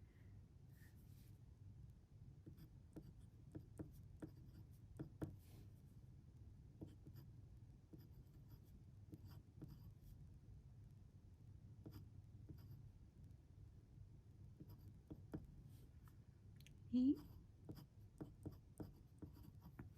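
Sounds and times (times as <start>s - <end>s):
low room hum: 0.0s - 19.9s
pen scratching on paper: 2.4s - 5.4s, 6.8s - 7.3s, 7.9s - 10.0s, 11.8s - 12.8s, 14.6s - 15.5s, 17.2s - 19.9s.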